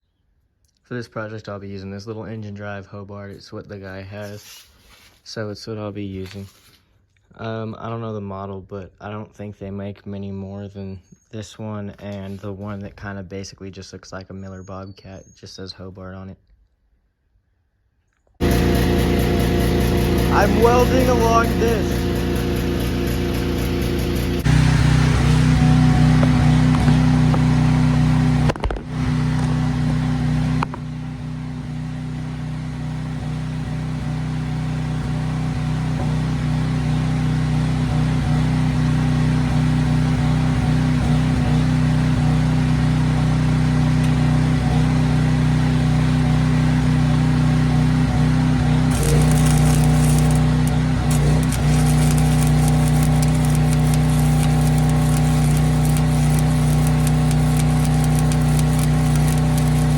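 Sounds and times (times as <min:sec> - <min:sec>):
welding arc crackling: 0:18.4 - 0:30.8, 0:48.8 - 0:59.9
welder engine running: 0:18.4 - 0:59.9.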